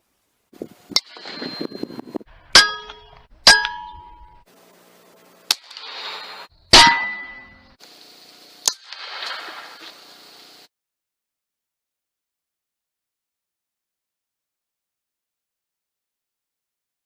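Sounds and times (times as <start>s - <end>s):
short metallic ring: 1.0s - 2.0s, 2.6s - 4.4s, 6.8s - 7.7s.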